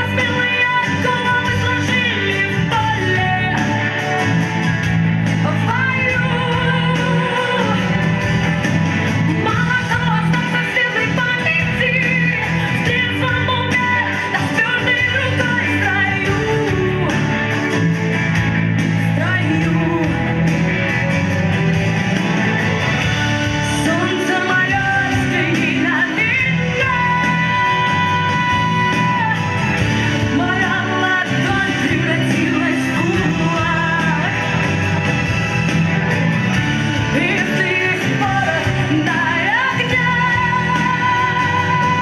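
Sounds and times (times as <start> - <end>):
person singing: 0.0 - 4.6, 5.3 - 8.6, 9.2 - 18.2, 18.9 - 21.6, 23.4 - 35.2, 36.9 - 42.0
band backing track: 0.0 - 42.0.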